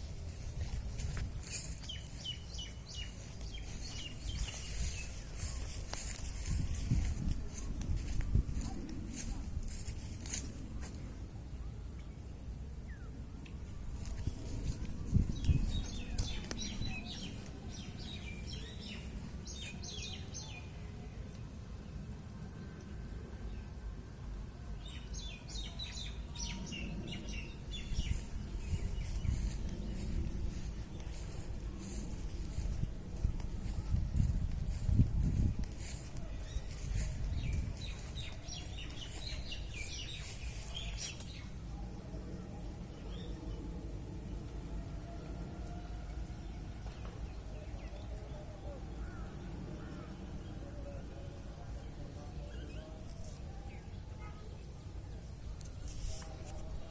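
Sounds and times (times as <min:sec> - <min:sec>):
small birds chirping: 0:00.0 - 0:11.6, 0:12.9 - 0:21.0, 0:24.9 - 0:41.9
low outdoor rumble: 0:00.0 - 0:56.9.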